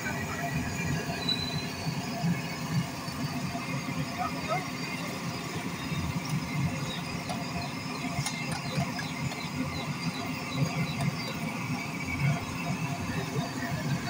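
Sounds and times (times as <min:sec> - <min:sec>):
traffic rumble: 0:00.0 - 0:14.0
small clicks and squeaks: 0:05.9 - 0:12.4.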